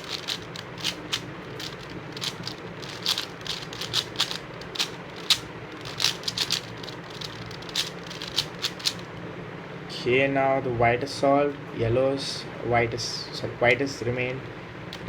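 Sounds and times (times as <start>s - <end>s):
puzzle cube layers clicking: 0.0s - 9.0s.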